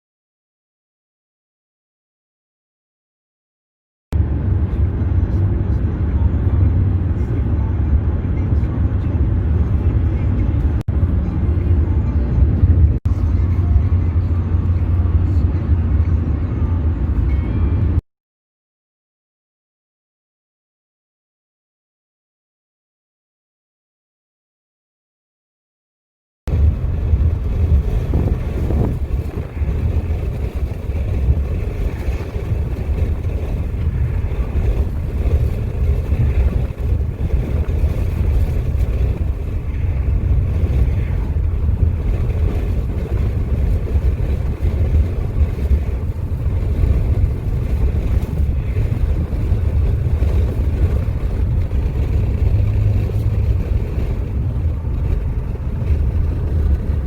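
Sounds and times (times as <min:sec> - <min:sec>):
wind buffeting microphone: 0:26.5 - 0:57.0.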